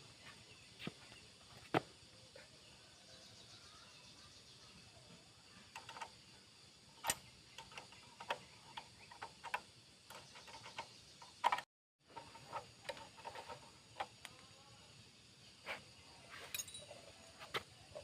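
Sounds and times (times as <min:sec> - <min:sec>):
clinks of hand tools and metal parts: 0:16.4 - 0:17.2.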